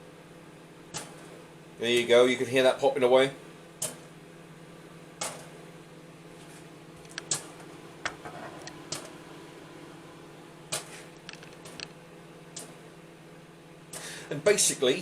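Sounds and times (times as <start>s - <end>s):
microwave oven hum: 0.0s - 15.0s
popcorn popping: 0.8s - 2.2s, 3.8s - 4.2s, 5.1s - 5.6s, 7.0s - 9.3s, 10.6s - 13.0s, 13.9s - 14.3s.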